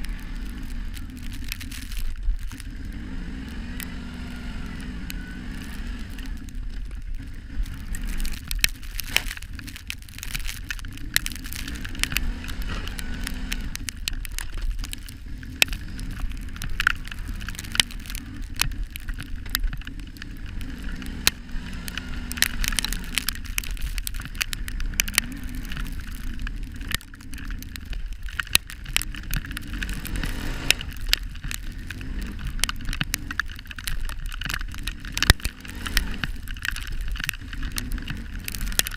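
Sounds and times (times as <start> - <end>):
atv engine running: 0.0 - 38.9
sharp clicks and crackles: 0.0 - 38.9.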